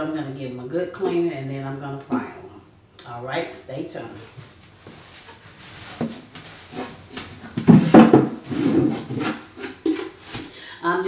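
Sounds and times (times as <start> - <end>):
wood knocks and thumps: 4.9 - 10.5
drawer sliding: 5.2 - 10.5.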